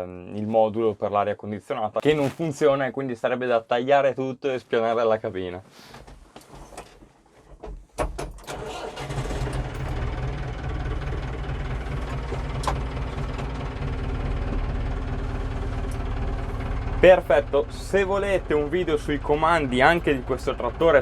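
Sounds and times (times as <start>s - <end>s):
diesel engine cranking: 8.3s - 21.0s
diesel engine idling: 8.5s - 21.0s.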